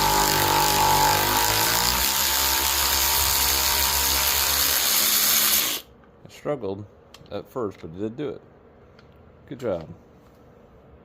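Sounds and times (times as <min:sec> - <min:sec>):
electric ratchet motor whining: 0:00.0 - 0:05.9.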